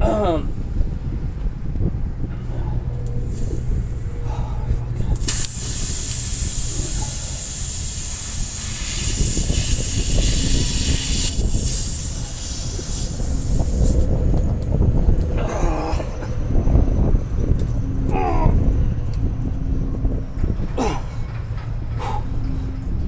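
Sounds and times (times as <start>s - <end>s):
low rumble: 0.5s - 23.0s
air hissing from tire: 3.2s - 14.1s.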